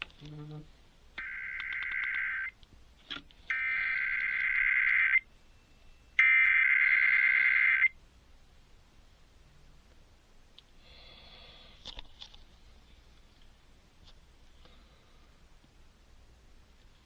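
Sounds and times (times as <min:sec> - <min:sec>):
digital alert data bursts: 0:01.2 - 0:02.6, 0:03.5 - 0:05.2, 0:06.2 - 0:07.9.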